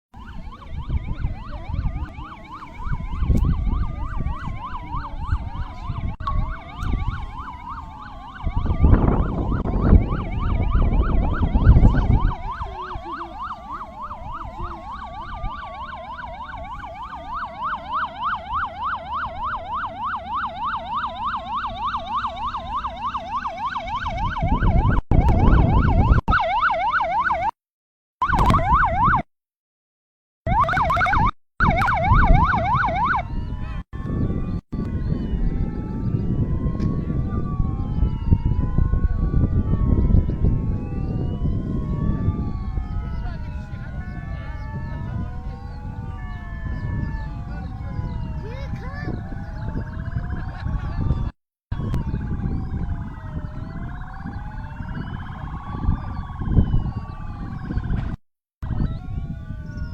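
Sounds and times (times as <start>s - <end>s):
siren wailing: 0.2s - 27.5s, 28.2s - 29.2s, 30.5s - 59.9s
siren yelping: 0.2s - 27.5s, 28.2s - 29.2s, 30.5s - 59.9s.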